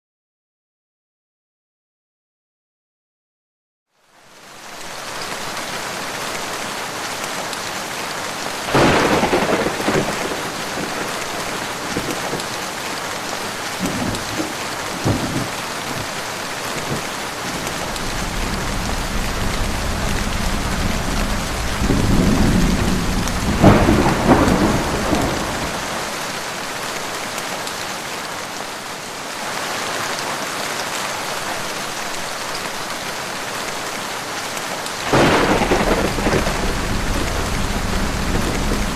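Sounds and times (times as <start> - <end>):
heavy rain falling: 4.0 - 38.9
thunder cracking and rumbling: 8.7 - 12.5, 13.8 - 16.2, 16.8 - 26.0, 35.1 - 38.9.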